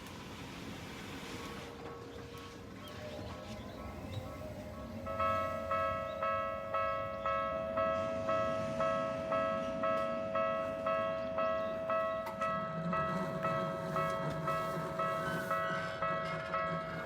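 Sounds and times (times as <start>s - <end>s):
level crossing alarm dinging: 3.4s - 16.2s.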